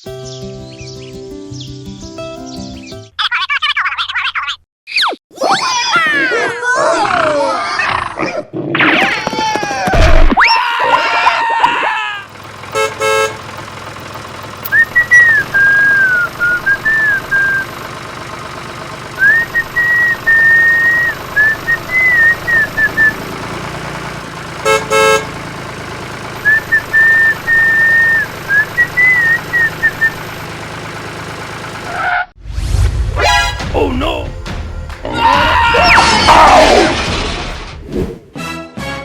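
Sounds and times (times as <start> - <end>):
engine hum: 11.8 - 38.4.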